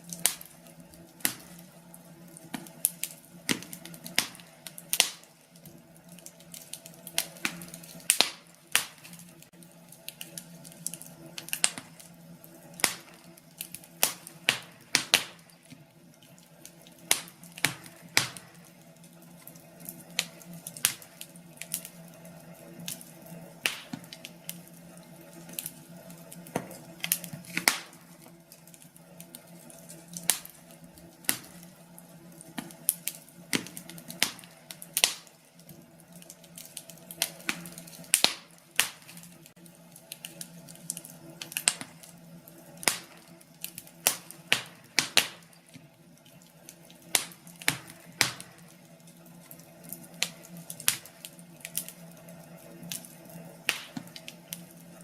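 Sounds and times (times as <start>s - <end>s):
wood fire crackling: 0.0s - 55.0s
sharp pops: 7.2s - 9.2s.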